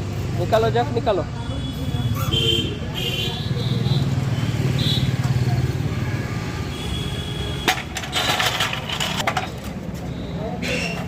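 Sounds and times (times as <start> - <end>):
metal rattling and scraping: 7.6 - 10.0.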